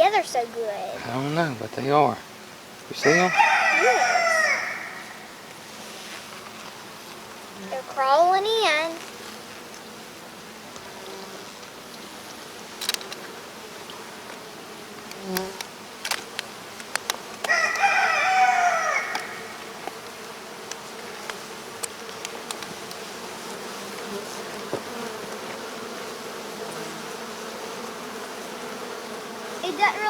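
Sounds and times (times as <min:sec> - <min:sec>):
honeybees buzzing: 0:00.0 - 0:30.0
rooster crowing: 0:03.0 - 0:05.4, 0:17.4 - 0:19.7.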